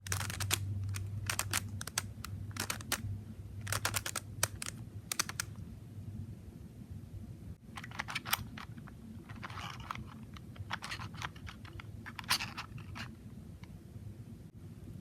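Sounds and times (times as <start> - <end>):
puzzle cube plastic clicks: 0.0 - 3.0, 3.6 - 5.6, 7.8 - 13.1
faint low hum: 0.0 - 15.0.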